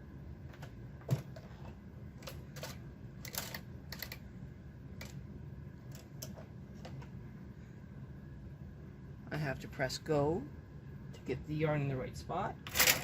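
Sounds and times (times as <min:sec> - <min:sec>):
knitting machine carriage clicking: 0:02.2 - 0:04.2, 0:12.6 - 0:13.0.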